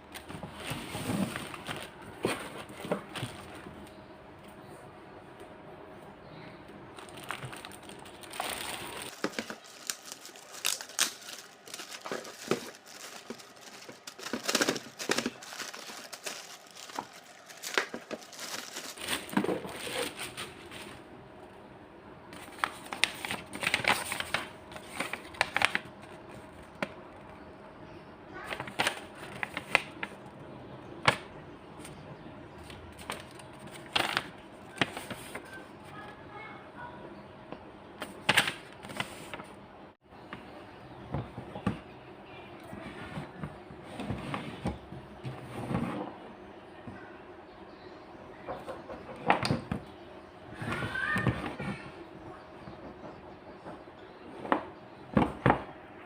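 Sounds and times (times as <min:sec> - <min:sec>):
plastic packaging crinkling and tearing: 0:07.0 - 0:21.0, 0:22.4 - 0:26.3.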